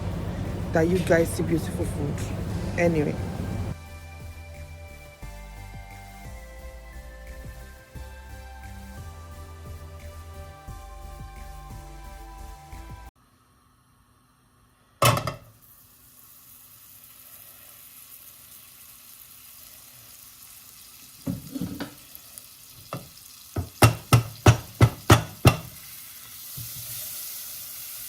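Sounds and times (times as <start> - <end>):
butter sizzling in a frying pan: 15.1 - 28.0.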